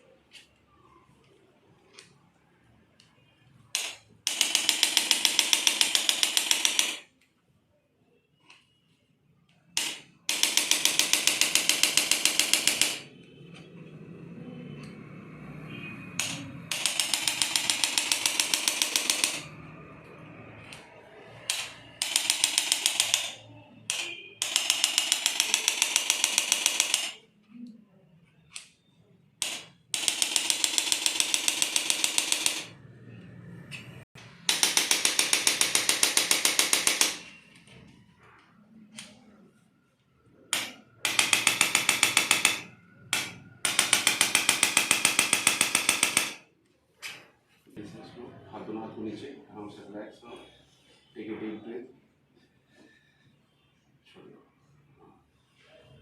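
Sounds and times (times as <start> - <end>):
percussion instrument rapid clicking: 9.8 - 13.0, 16.2 - 19.6, 21.5 - 27.2, 29.4 - 32.7, 34.4 - 37.3, 40.6 - 46.4.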